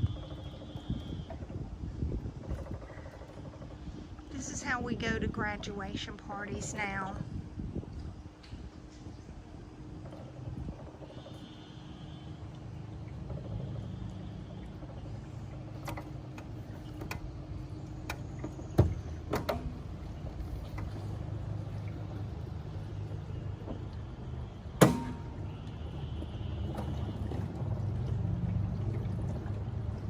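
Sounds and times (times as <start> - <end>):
outboard motor droning: 0.0 - 30.0
sharp knocks: 24.8 - 25.4.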